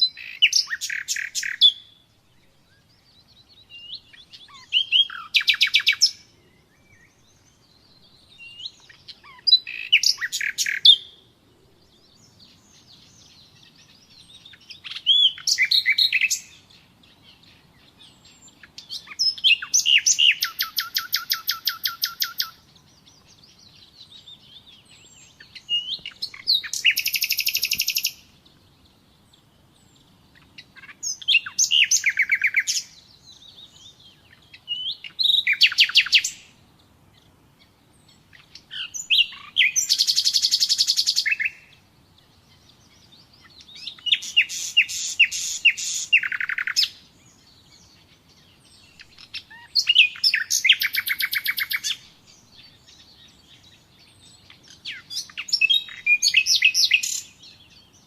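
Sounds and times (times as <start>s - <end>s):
nightingale singing: 0.0s - 58.0s.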